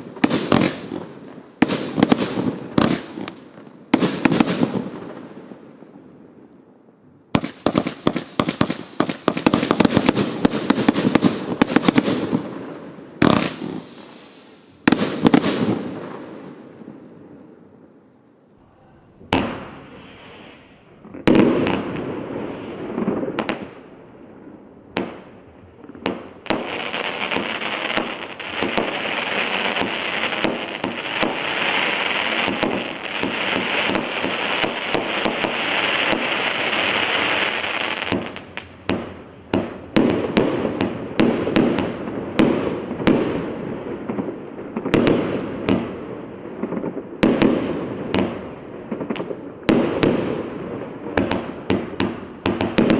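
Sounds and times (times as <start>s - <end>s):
firework cake firing: 0.0s - 5.2s, 7.4s - 16.6s, 26.0s - 52.9s.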